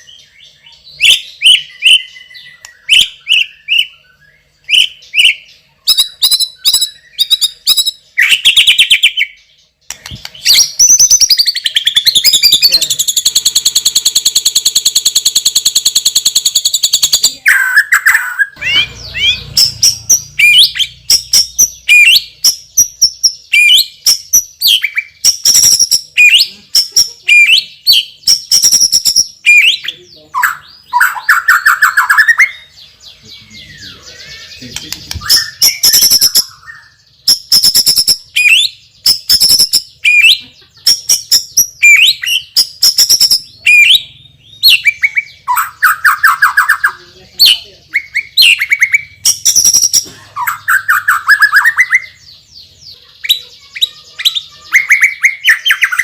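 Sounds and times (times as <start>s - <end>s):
bird singing varied whistles: 1.0s - 9.4s, 10.1s - 29.8s, 34.3s - 52.2s
fast buzzing rattle trill: 12.3s - 17.2s.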